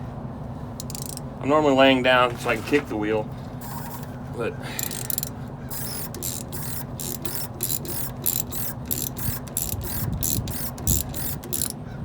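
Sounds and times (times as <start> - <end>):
ratchet wrench clicking: 0.8 - 1.3, 3.6 - 4.1, 4.8 - 11.8.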